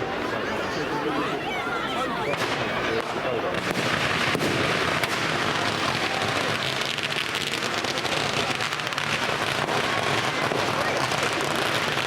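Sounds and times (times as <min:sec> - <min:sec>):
bonfire crackling and popping: 0:02.3 - 0:12.0.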